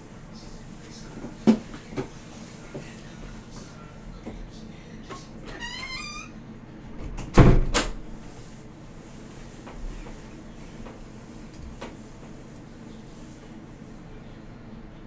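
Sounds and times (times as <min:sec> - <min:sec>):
door hinge squeaking: 0:05.5 - 0:06.4
door banging shut: 0:06.9 - 0:08.1.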